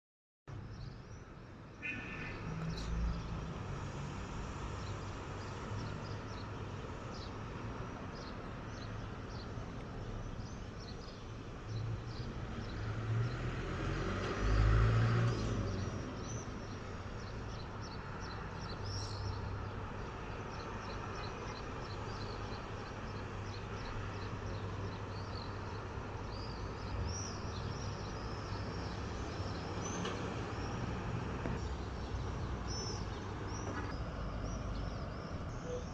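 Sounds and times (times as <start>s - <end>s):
traffic rumble: 0.5s - 35.9s
vehicle passing: 12.5s - 16.4s.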